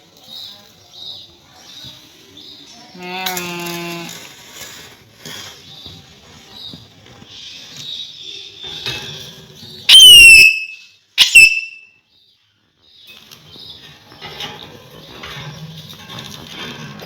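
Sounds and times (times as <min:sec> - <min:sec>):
parakeet whistling loudly: 0:09.9 - 0:11.8.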